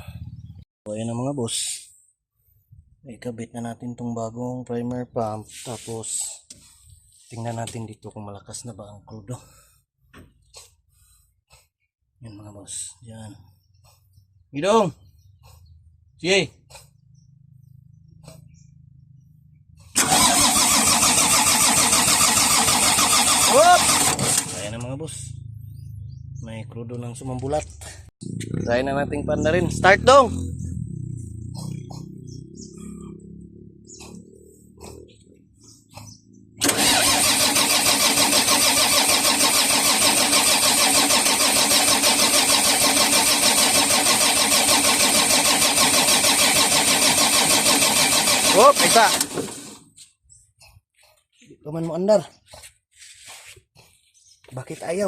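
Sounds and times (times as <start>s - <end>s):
diesel engine cranking: 19.9s - 25.0s, 36.3s - 49.9s.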